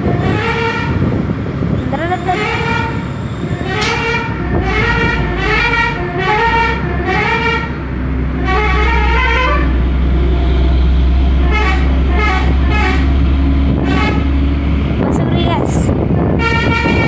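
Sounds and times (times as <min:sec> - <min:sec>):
diesel engine running: 0:00.0 - 0:17.0
multi-tone air horn melody: 0:03.6 - 0:07.7, 0:08.4 - 0:09.8, 0:11.4 - 0:13.1, 0:13.8 - 0:14.3, 0:16.2 - 0:17.0.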